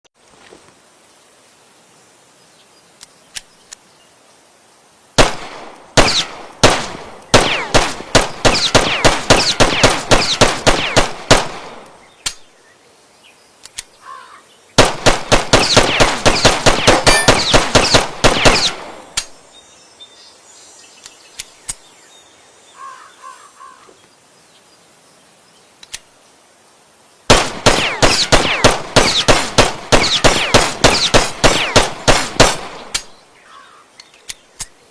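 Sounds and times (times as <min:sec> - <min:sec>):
pistol shots: 0:05.2 - 0:11.9, 0:14.8 - 0:19.4, 0:27.3 - 0:33.1.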